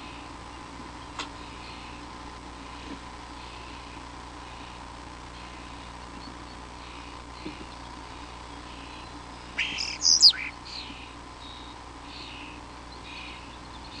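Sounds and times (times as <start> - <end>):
small animal chirping: 9.6 - 10.9.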